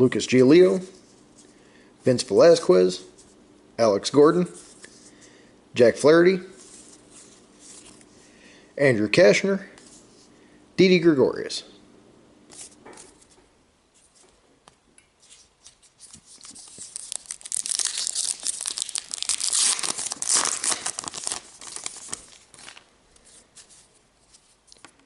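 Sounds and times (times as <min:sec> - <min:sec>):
wrapper tearing and crinkling: 0:16.0 - 0:22.9.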